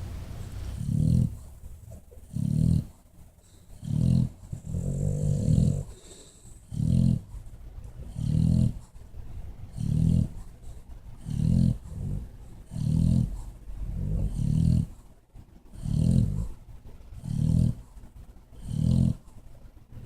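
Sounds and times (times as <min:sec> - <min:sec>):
dog snoring: 0:00.6 - 0:07.3, 0:08.0 - 0:08.9, 0:09.7 - 0:10.4, 0:11.2 - 0:15.0, 0:15.7 - 0:16.6, 0:17.2 - 0:17.9, 0:18.6 - 0:19.3.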